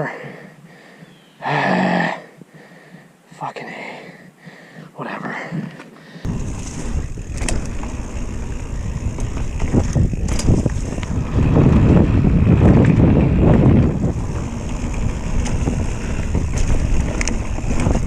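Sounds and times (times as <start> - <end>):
bike clicks: 5.8 - 18.0
tyres rumbling on dirt: 6.3 - 18.0
wind buffeting microphone: 6.3 - 18.0.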